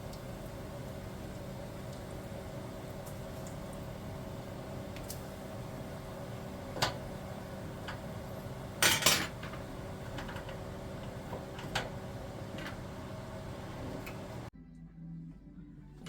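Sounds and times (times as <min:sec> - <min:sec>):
steady low hum: 0:00.0 - 0:16.0
dishes and cutlery clinking: 0:08.8 - 0:09.6.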